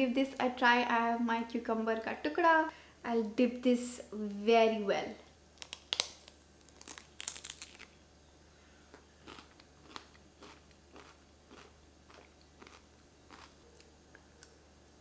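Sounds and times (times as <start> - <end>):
person chewing: 5.6 - 7.9, 8.9 - 14.6
crisp crunch of biting cucumber: 5.6 - 8.0, 9.0 - 13.6.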